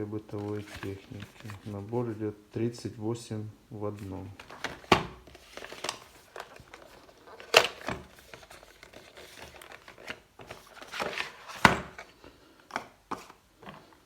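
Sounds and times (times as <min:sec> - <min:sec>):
packaging crinkling: 0:00.3 - 0:01.9, 0:04.1 - 0:12.2.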